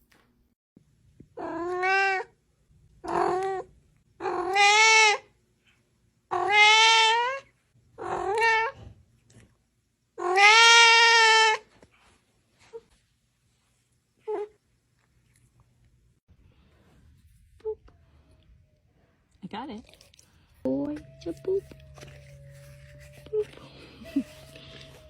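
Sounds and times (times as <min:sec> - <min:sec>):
cat meowing loudly: 0:04.2 - 0:05.2, 0:06.3 - 0:07.4, 0:10.2 - 0:11.7.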